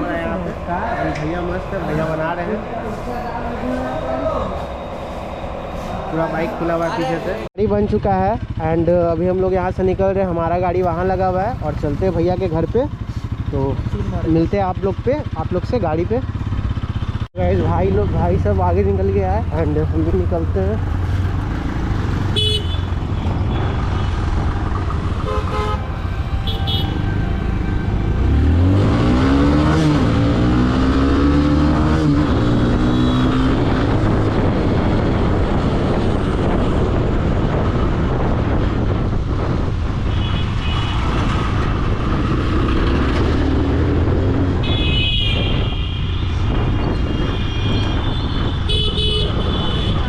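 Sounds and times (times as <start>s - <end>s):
motorcycle engine and road noise: 0.0s - 50.0s
vehicle horns honking: 22.3s - 24.3s, 25.1s - 29.2s, 32.8s - 33.7s, 40.1s - 41.2s, 44.6s - 50.0s
engine revving up: 27.6s - 35.8s, 41.2s - 44.6s.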